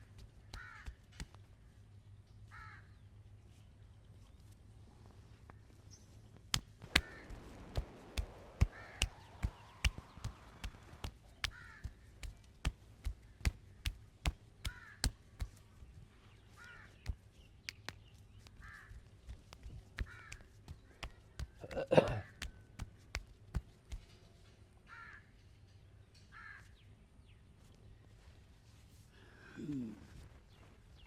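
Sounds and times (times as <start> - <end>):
hand strikes of massage: 0.1 - 1.4, 6.5 - 15.7, 19.2 - 24.1
crows cawing: 0.4 - 1.1, 2.5 - 3.0, 6.9 - 12.2, 14.6 - 15.2, 16.5 - 17.1, 18.6 - 19.1, 20.0 - 22.5, 24.8 - 25.4, 26.3 - 26.8.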